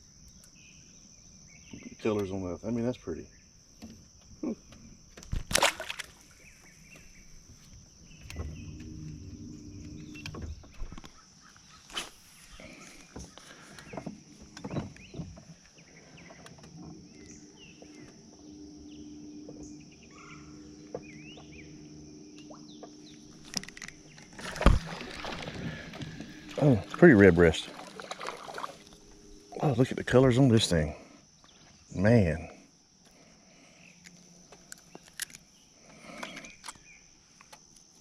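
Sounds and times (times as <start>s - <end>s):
knocks and clicks of gear in boat: 1.6s - 2.5s, 3.7s - 29.2s
faint low hum: 5.6s - 11.1s
bird chirps: 17.1s - 29.9s
high-pitched insect drone: 17.1s - 34.9s.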